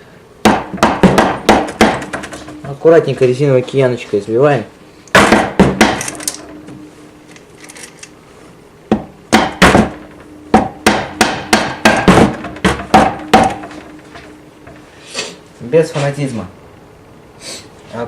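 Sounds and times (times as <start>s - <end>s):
rubber mallet knocking on metal: 0.4s - 2.8s, 5.2s - 6.0s, 8.9s - 14.8s.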